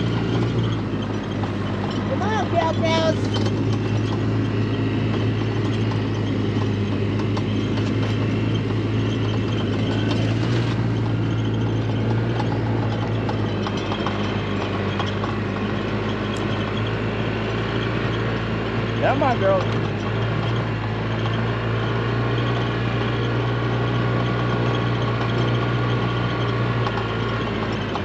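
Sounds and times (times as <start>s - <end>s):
road and wind noise: 0.0s - 28.0s
vehicle engine running: 0.0s - 28.0s.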